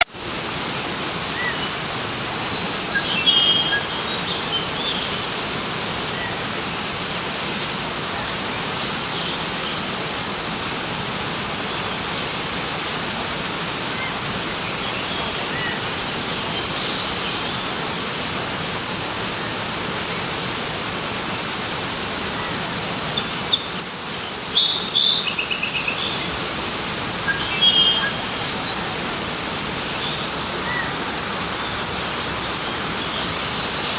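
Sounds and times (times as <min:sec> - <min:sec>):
river water rushing: 0:00.0 - 0:33.9
birds chirping: 0:01.0 - 0:05.3, 0:22.2 - 0:33.9.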